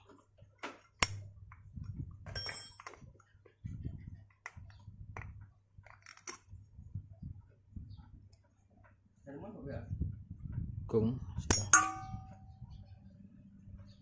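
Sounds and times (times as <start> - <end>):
metal tools clinking and knocking: 2.2 - 3.1, 11.5 - 12.4.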